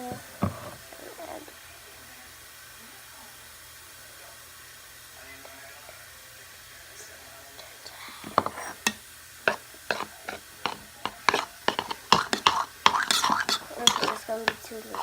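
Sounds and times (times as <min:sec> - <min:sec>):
utensil clicking against bowl: 0:08.2 - 0:15.0.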